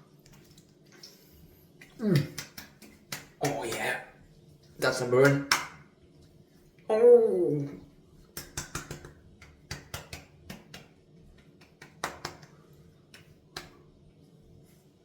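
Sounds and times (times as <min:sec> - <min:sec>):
sharp irregular taps and clicks: 0:02.2 - 0:03.8, 0:05.2 - 0:05.8, 0:08.4 - 0:12.5
person saying oh: 0:06.9 - 0:07.8.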